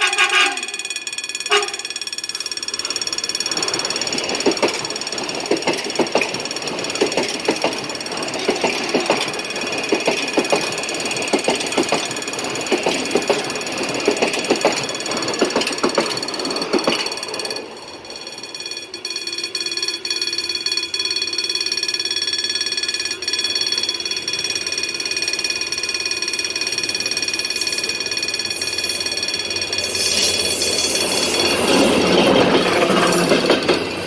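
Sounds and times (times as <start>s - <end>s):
train rumble: 0.0s - 19.0s, 26.3s - 34.0s
level crossing bell ringing: 17.3s - 31.7s.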